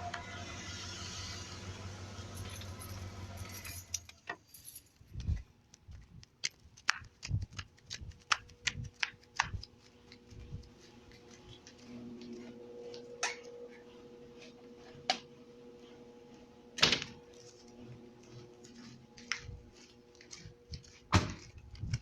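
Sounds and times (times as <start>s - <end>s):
small hard objects clicking: 5.0s - 10.3s.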